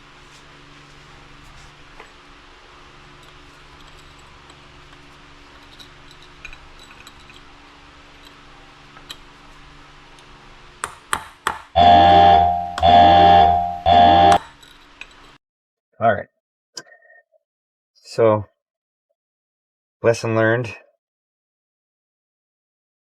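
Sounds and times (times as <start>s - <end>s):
faint steady hum: 11.8s - 14.4s
synthesized electronic music blasts: 11.8s - 14.4s.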